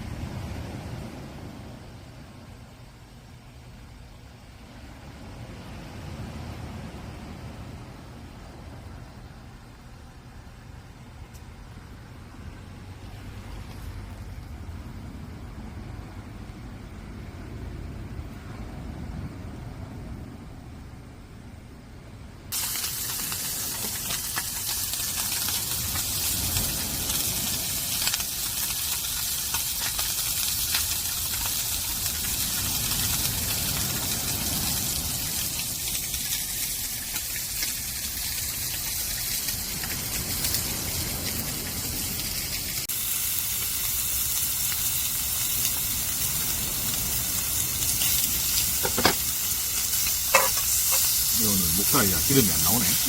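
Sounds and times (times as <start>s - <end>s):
meat sizzling and crackling: 22.5s - 53.0s.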